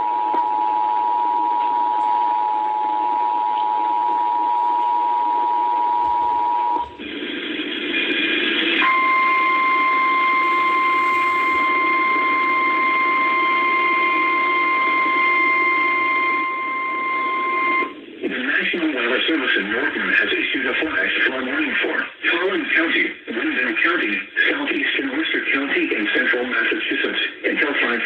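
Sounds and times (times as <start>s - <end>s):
radio noise: 0.1s - 13.4s, 16.1s - 28.0s
two-tone attention signal: 8.8s - 17.9s
person reading warning: 10.4s - 11.7s, 18.2s - 28.0s
steady high alert tone: 10.4s - 11.7s.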